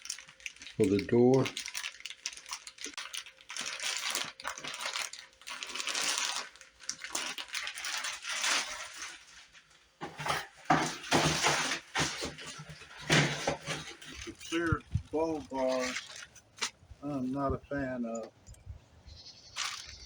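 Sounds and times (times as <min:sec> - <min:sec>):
plastic packaging rustling: 0:00.0 - 0:18.2, 0:19.2 - 0:20.0
plastic parts clinking: 0:10.0 - 0:16.8.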